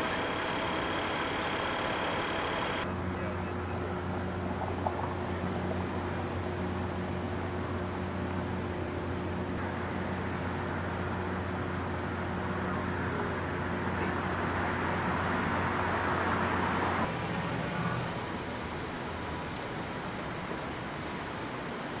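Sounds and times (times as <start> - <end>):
vehicle engine idling: 0.0 - 15.1
traffic noise: 0.0 - 22.0.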